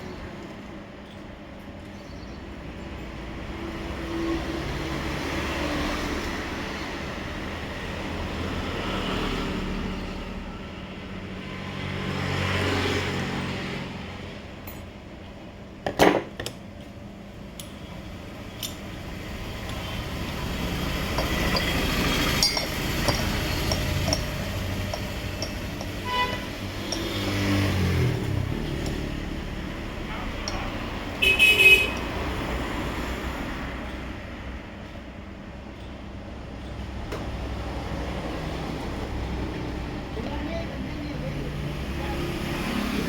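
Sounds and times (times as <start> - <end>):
passing road traffic: 0.0 - 43.0
metallic clinks of tools: 21.0 - 27.6.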